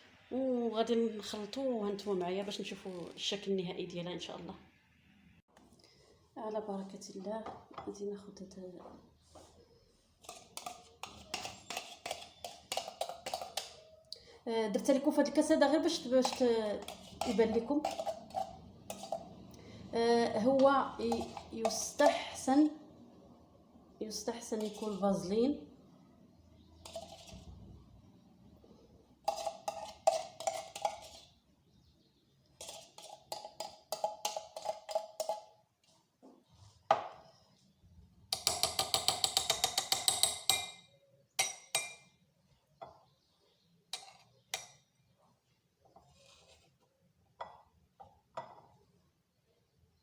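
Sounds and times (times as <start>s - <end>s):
spoon tapping glass: 38.4s - 42.0s
spoon clinking against glass: 38.4s - 42.1s.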